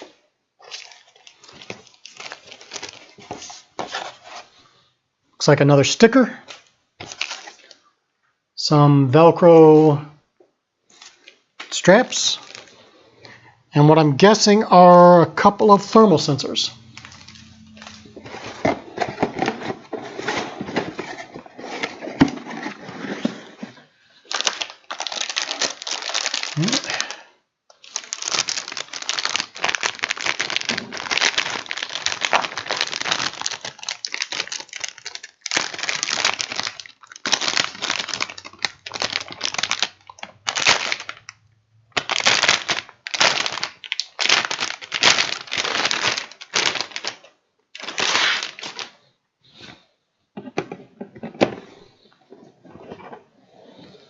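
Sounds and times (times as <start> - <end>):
plastic packaging crinkling: 0.0 - 4.4, 6.5 - 7.9, 10.9 - 13.0, 16.2 - 23.5, 24.2 - 49.0.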